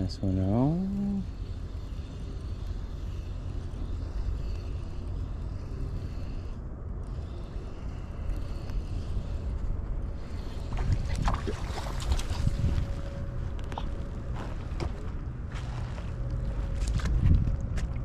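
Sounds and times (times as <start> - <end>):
wind on microphone: 4.0 - 18.0.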